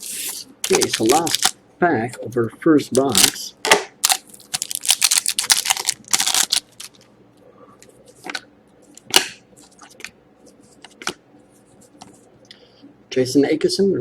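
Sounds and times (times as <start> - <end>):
cards being handled: 0.0 - 1.6
foil pack tearing open: 0.0 - 1.6, 3.1 - 3.4, 4.0 - 7.0.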